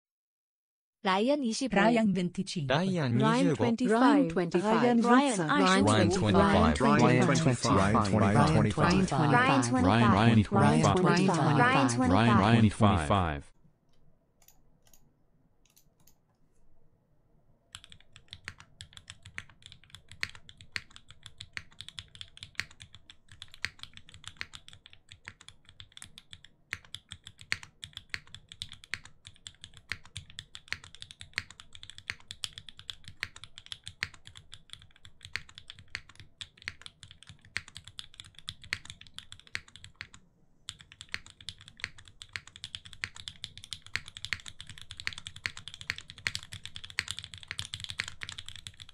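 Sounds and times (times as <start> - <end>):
mechanical keyboard typing: 17.7 - 48.9.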